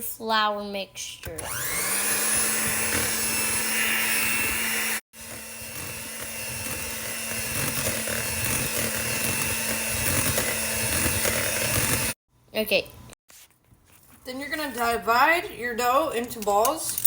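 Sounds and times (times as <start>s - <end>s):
electric mixer whining: 1.2s - 12.2s.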